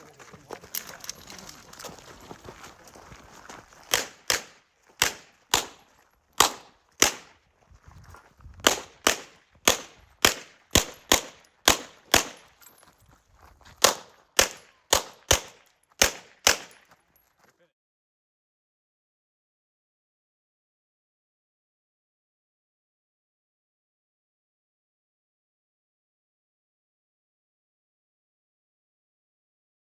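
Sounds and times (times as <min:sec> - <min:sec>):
pistol shots: 0:03.9 - 0:07.4, 0:08.6 - 0:12.5, 0:13.8 - 0:16.8.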